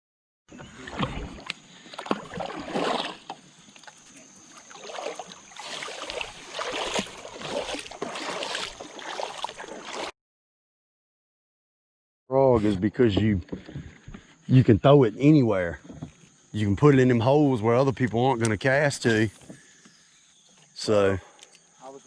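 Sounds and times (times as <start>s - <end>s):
paddle splashing water: 0.5s - 10.1s.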